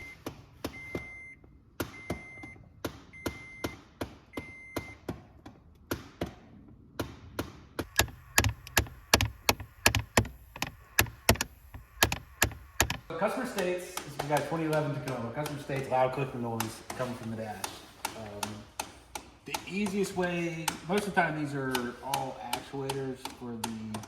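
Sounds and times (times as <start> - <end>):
door actuator clicking: 7.8 - 13.1, 21.7 - 24.0.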